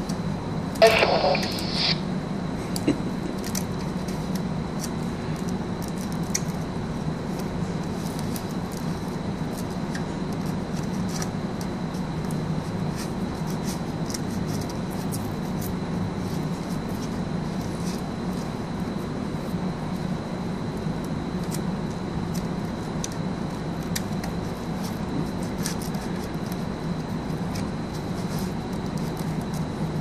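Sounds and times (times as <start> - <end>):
steady low hum: 0.0 - 30.0
faint high whine: 0.7 - 2.4.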